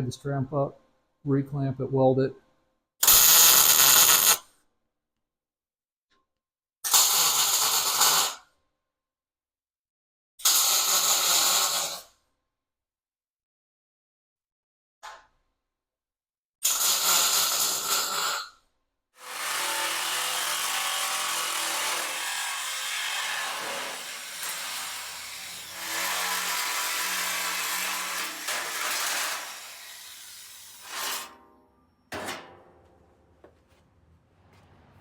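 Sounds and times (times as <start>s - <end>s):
angle grinder grinding sheet metal: 19.2s - 31.4s.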